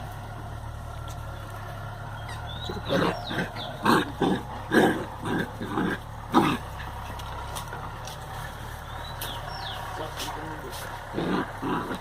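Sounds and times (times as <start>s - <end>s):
dogs barking while playing: 2.8s - 7.0s.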